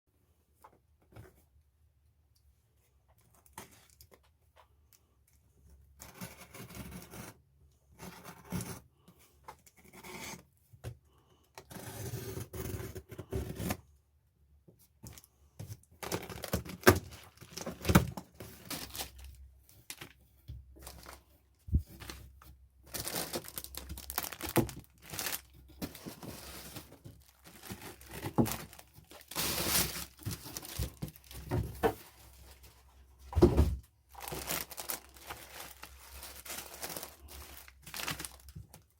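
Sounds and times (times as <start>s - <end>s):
packaging tearing and crinkling: 16.0s - 20.1s, 22.9s - 31.6s, 34.1s - 38.8s.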